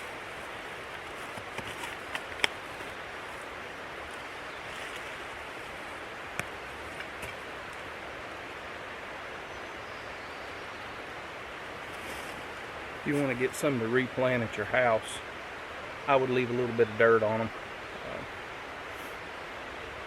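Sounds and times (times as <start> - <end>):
steady rushing noise: 0.0 - 9.4
shovel knocking and scraping soil: 1.0 - 2.9.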